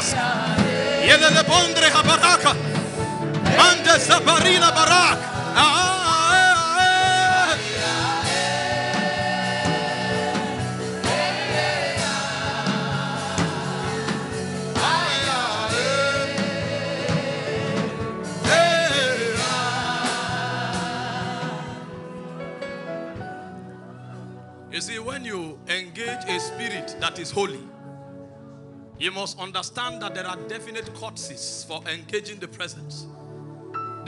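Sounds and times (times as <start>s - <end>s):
gospel singing: 0.0s - 25.0s
instrumental backing: 0.0s - 34.0s.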